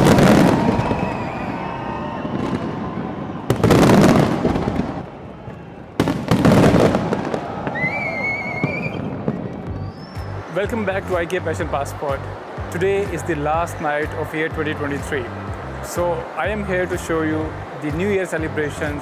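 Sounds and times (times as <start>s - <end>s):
wavering high whistle: 0.0s - 3.0s, 7.6s - 10.6s
fireworks booming bangs: 0.0s - 10.2s
fireworks crackle: 0.0s - 10.2s.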